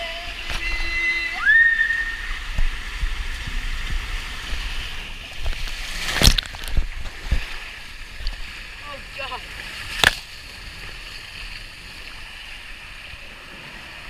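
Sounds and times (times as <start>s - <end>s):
water sloshing in a pool: 0.0s - 14.0s
short rising pitched calls: 0.7s - 2.4s.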